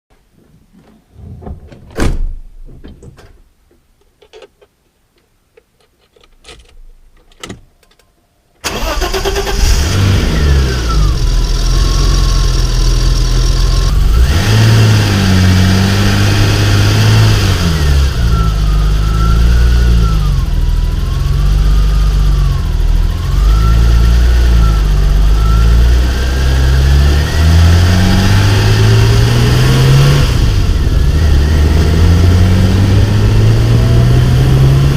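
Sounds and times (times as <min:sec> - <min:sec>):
car engine starting and revving: 0:08.6 - 0:34.9.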